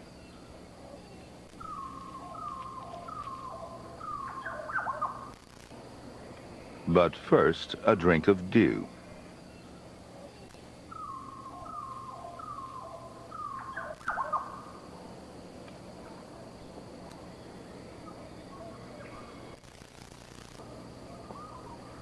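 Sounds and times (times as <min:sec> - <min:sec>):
faint bird calls: 0:00.0 - 0:05.4, 0:08.8 - 0:15.2, 0:16.0 - 0:20.3, 0:21.0 - 0:22.0.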